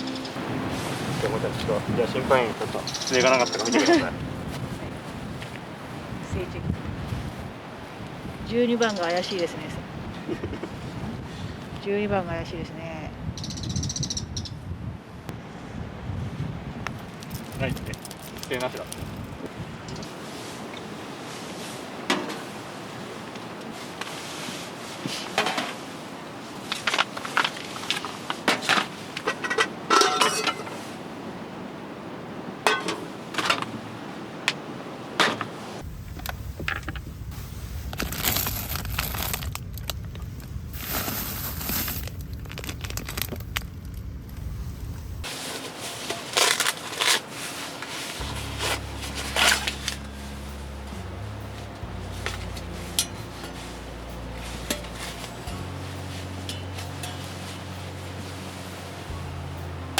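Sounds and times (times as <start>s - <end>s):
low rumble: 3.8s - 7.5s, 35.8s - 45.3s, 48.2s - 59.9s
cookware and dishes clinking: 29.3s - 30.8s, 32.7s - 33.7s, 54.7s - 55.3s.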